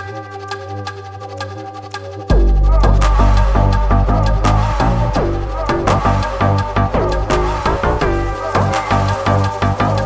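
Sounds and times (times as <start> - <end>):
electronic music: 0.0 - 10.0
heavy bass beat: 2.3 - 10.0.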